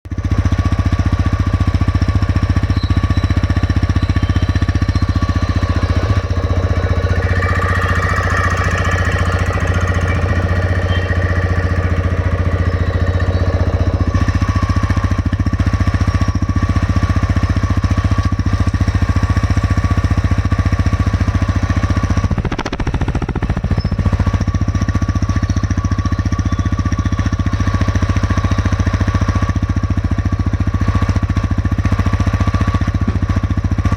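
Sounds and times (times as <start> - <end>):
motorcycle engine idling: 0.1 - 33.9
fast ticking knock: 22.2 - 24.2.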